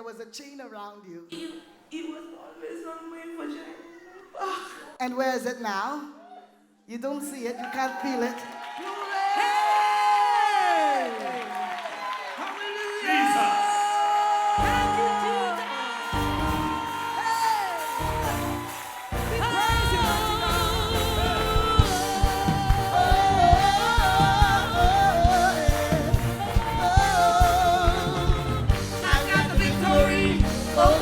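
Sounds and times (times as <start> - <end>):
person singing: 13.0 - 31.0
held keyboard chords: 14.6 - 31.0
steady drum beat: 14.6 - 31.0.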